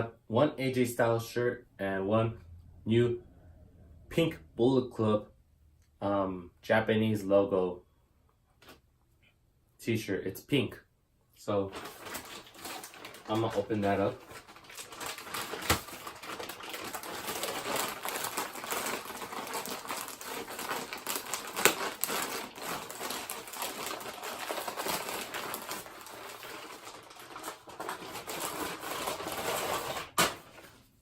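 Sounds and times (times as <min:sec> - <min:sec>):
packaging crinkling and rustling: 0:11.7 - 0:31.0.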